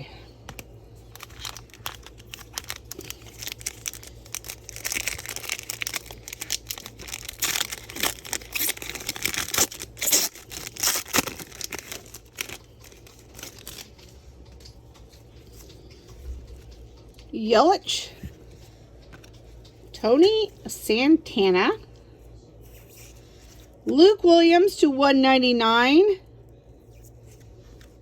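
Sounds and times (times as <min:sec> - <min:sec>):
cards rustling and clicking: 0:00.4 - 0:17.3, 0:18.3 - 0:19.9
wrapper crinkling and tearing: 0:00.5 - 0:14.0.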